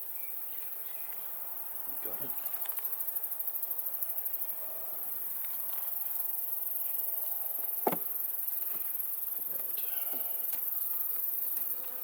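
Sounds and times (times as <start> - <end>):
high insect trill: 0.0 - 12.0
honeybees humming: 7.6 - 12.0.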